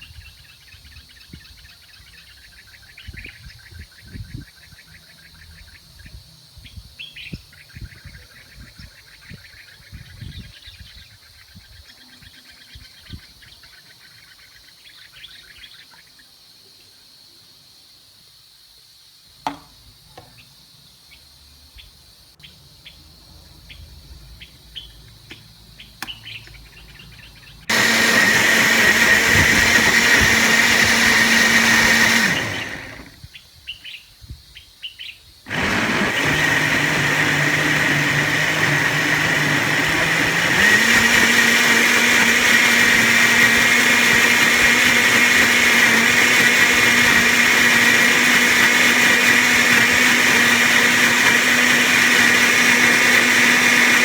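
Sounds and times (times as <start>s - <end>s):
electric kitchen blender running: 27.7s - 33.2s, 35.5s - 54.0s.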